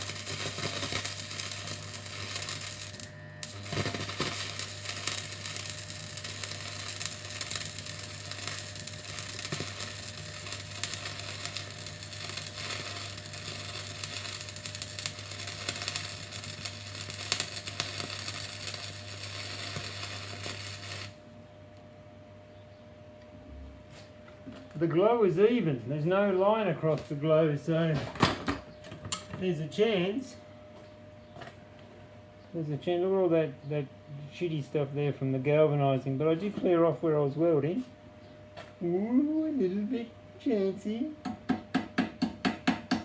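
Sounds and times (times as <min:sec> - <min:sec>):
welding arc crackling: 0:00.0 - 0:21.3
low electrical hum: 0:00.0 - 0:43.0.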